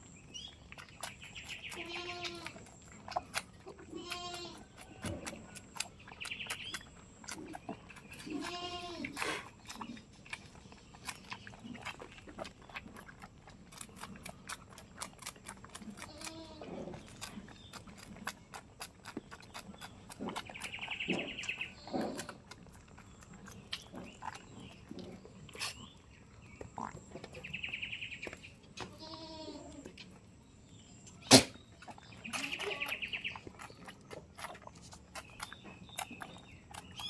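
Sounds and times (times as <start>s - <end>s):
goats bleating: 1.8s - 2.6s, 3.9s - 4.6s, 8.2s - 9.2s, 28.8s - 29.8s, 32.3s - 33.1s.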